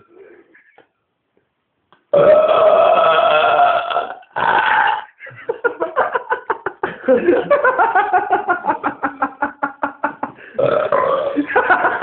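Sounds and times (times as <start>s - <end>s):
man belching loudly: 2.1s - 5.2s, 10.6s - 11.5s.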